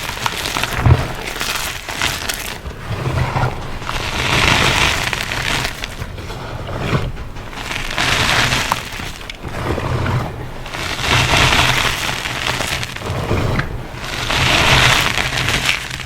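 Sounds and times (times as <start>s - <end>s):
chalk crunching: 0.0s - 16.0s.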